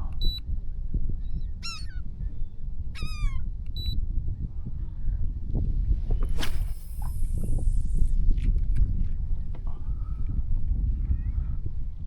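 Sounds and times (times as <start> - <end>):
bird harsh cry: 1.6 - 2.0.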